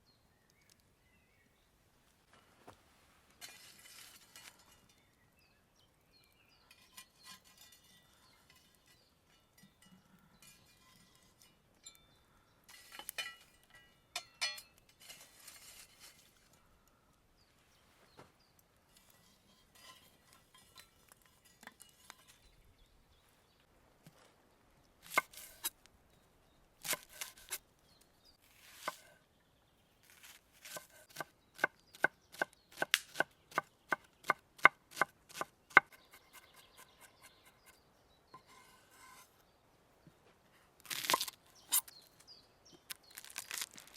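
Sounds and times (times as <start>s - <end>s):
clinks: 6.7s - 15.0s.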